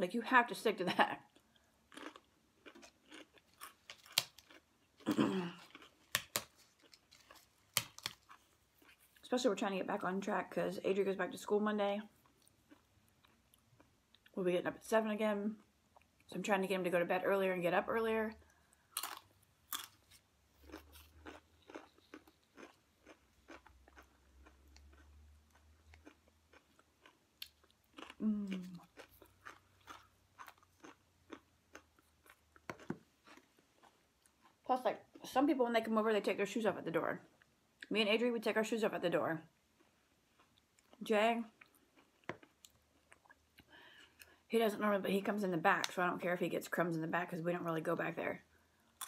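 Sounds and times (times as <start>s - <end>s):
person chewing food: 1.3s - 9.2s, 12.2s - 14.3s, 18.4s - 35.3s, 39.7s - 41.0s, 41.6s - 44.4s
crisp crunches: 2.0s - 9.1s.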